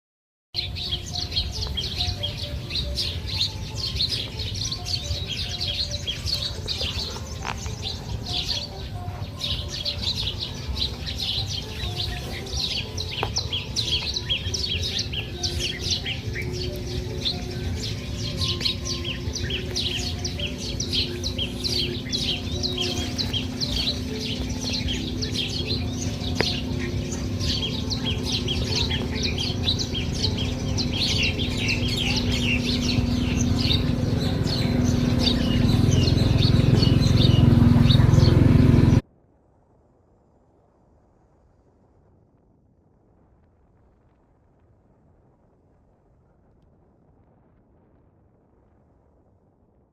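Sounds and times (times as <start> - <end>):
small birds chirping: 0.6 - 39.0
low steady rumble: 16.0 - 49.9.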